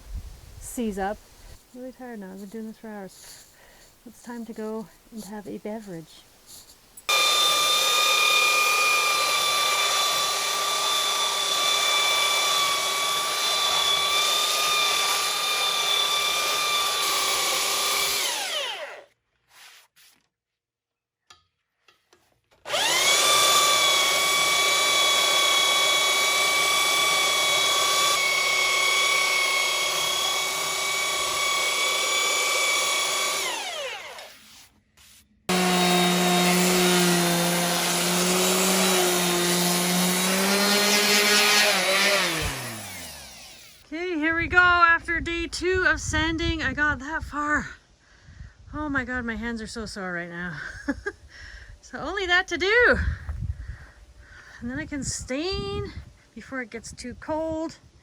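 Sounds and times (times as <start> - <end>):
electric sander whining: 7.1 - 19.1, 22.7 - 34.6, 35.5 - 43.8.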